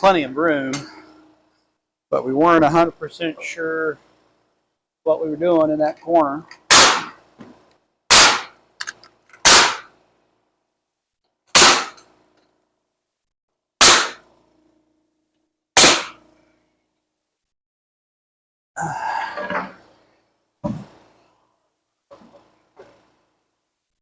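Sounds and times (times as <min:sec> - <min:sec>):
nail gun firing into wood: 0:06.7 - 0:07.2, 0:08.1 - 0:08.6, 0:09.4 - 0:09.9, 0:11.5 - 0:12.0, 0:13.8 - 0:14.2, 0:15.8 - 0:16.2.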